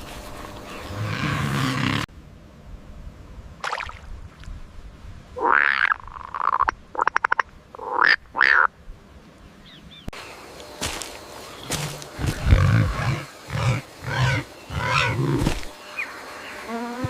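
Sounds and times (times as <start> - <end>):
animal calls: 11.7 - 15.6.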